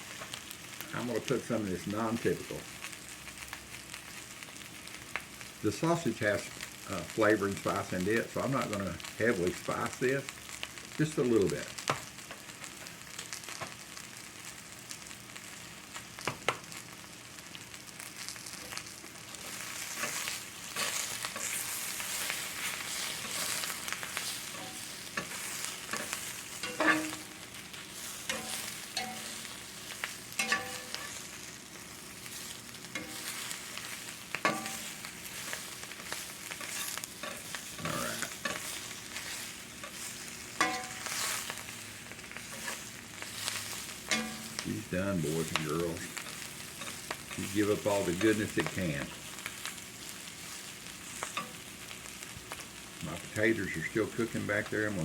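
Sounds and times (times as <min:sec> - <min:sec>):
food sizzling in a skillet: 0:00.0 - 0:55.0
utensil clacking against iron pan: 0:24.5 - 0:27.3, 0:28.3 - 0:29.4, 0:30.4 - 0:31.1, 0:34.4 - 0:34.8, 0:40.6 - 0:41.1, 0:44.1 - 0:44.6.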